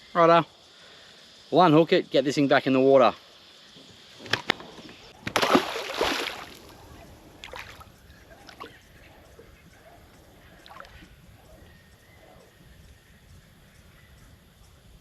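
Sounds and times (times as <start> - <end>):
water splashing and sloshing: 5.2 - 8.8, 10.5 - 11.1.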